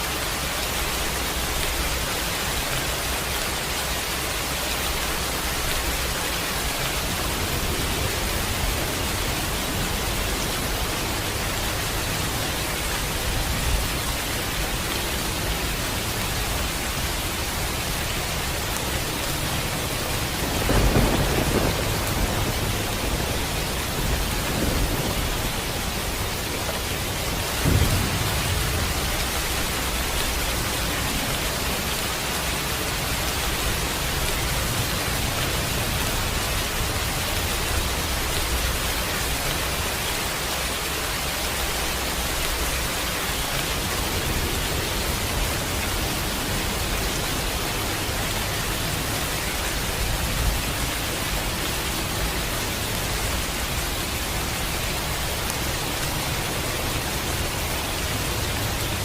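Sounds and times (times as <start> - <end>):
steady rain: 0.0 - 59.0
thunder rumbling: 4.5 - 14.8, 15.8 - 39.6.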